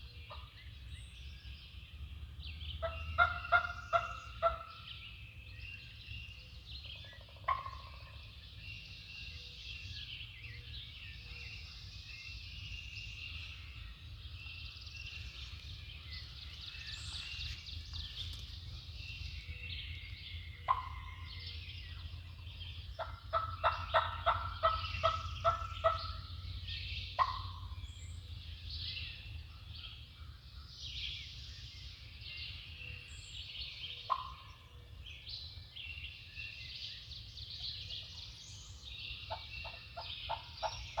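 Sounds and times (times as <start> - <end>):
songbirds chorus: 0.0 - 41.0
low steady rumble: 0.2 - 31.2
turkeys gobbling: 2.8 - 4.7, 7.3 - 8.2, 20.7 - 21.3, 23.0 - 26.3, 27.2 - 27.7, 34.1 - 34.6, 39.3 - 41.0.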